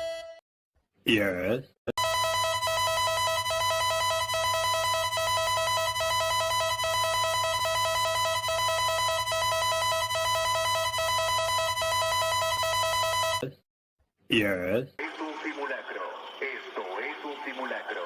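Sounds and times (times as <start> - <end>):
electronic warning siren pulsing: 2.0 - 13.4.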